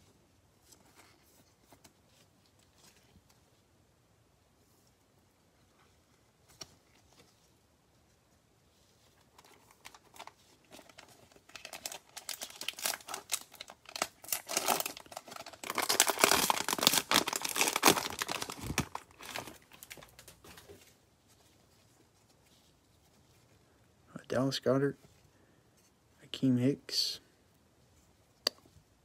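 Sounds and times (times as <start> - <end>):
cellophane wrapper crinkling and tearing: 9.1 - 20.8.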